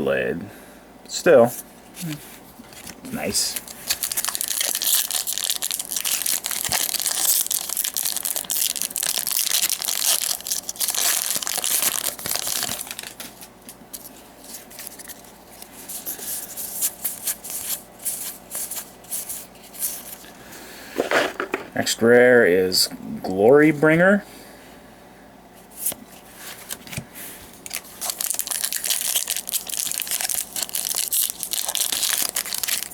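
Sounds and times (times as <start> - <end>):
foil wrapper crinkling and tearing: 2.7 - 18.9, 26.6 - 32.9.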